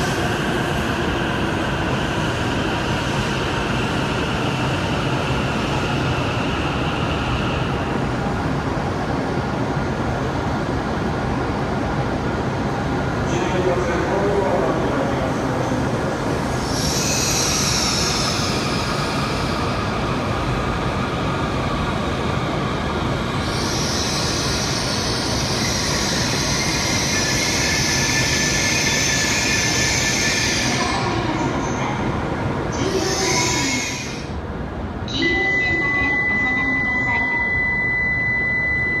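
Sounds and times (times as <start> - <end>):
high hiss or squeal: 16.6 - 19.7, 23.4 - 30.8.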